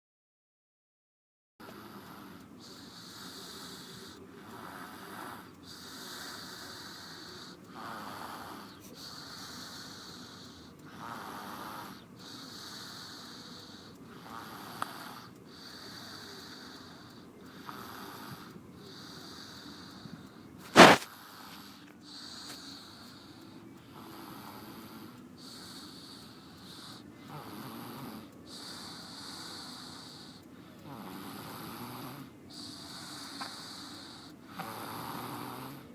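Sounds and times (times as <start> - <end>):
toddler snoring softly: 1.6 - 35.9
sharp click: 20.7 - 21.1.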